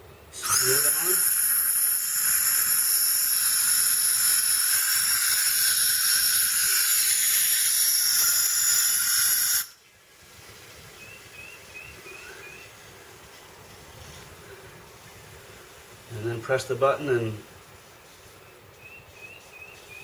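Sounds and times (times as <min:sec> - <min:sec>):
pressurised gas hissing: 0:00.3 - 0:09.8.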